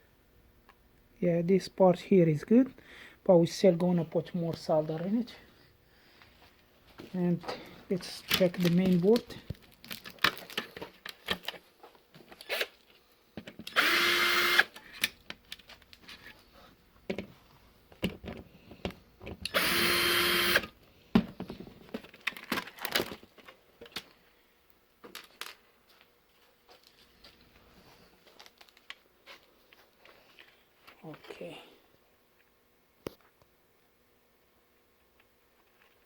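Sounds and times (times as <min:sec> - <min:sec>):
clicks and rattles of parts: 0:07.5 - 0:11.6, 0:21.3 - 0:24.2, 0:25.0 - 0:25.6
electric screwdriver motor running: 0:13.7 - 0:14.7, 0:19.4 - 0:20.7.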